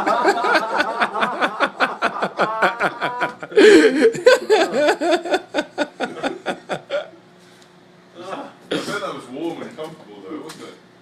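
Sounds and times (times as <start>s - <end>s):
people laughing: 0.0s - 7.2s.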